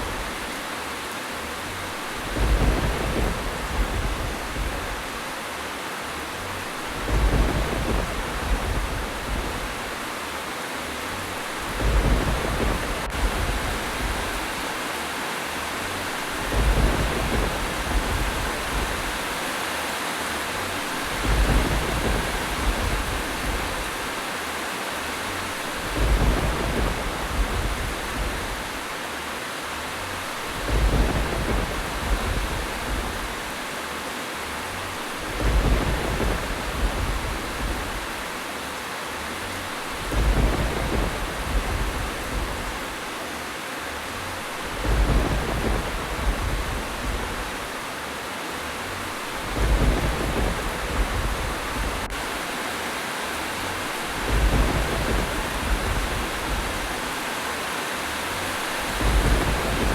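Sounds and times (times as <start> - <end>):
steady rain falling: 0.0 - 59.9
low rumble: 2.0 - 5.4, 6.6 - 10.2, 11.1 - 14.7, 16.3 - 19.4, 21.0 - 24.1, 25.8 - 28.9, 30.2 - 33.6, 34.9 - 38.4, 39.8 - 43.2, 44.1 - 47.9, 49.1 - 52.5, 53.8 - 57.2, 58.6 - 59.9.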